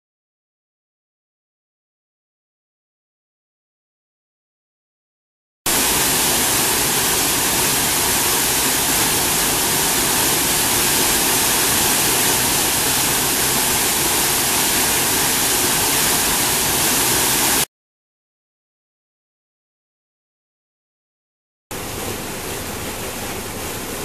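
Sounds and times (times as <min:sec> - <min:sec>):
rushing water of mountain stream: 0:05.7 - 0:17.7, 0:21.7 - 0:24.0.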